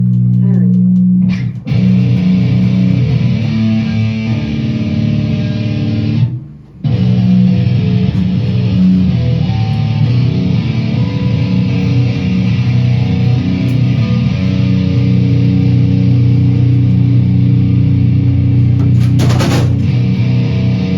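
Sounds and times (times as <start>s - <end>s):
bass guitar: 0.0s - 20.9s
electric guitar: 0.0s - 20.9s
live band jamming: 6.9s - 20.4s.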